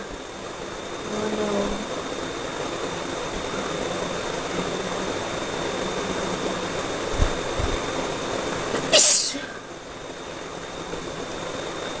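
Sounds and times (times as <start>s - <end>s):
thin high steady tone: 0.0s - 12.0s.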